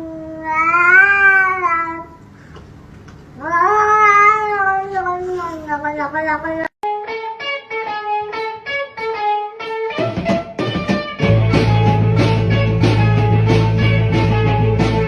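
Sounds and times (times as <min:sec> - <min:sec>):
plucked guitar notes: 0:06.9 - 0:15.0
heavy bass: 0:11.2 - 0:15.0.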